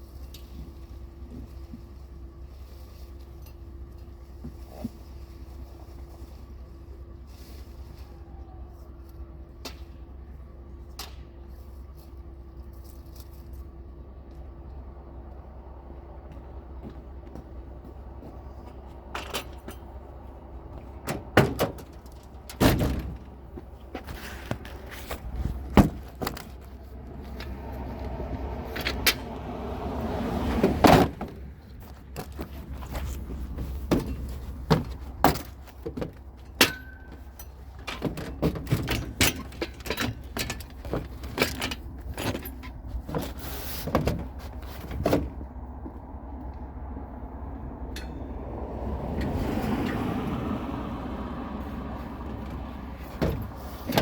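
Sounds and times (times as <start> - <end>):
vehicle engine humming: 0.0 - 54.0
knocks clicks and rattles: 30.8 - 45.4.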